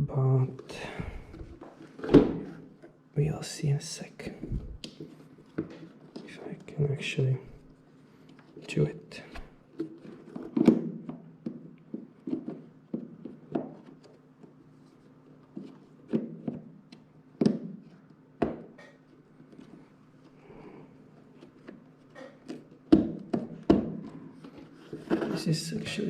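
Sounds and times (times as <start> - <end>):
faint steady hum: 0.0 - 26.0
rustling handling noise: 7.5 - 11.0, 21.0 - 26.0.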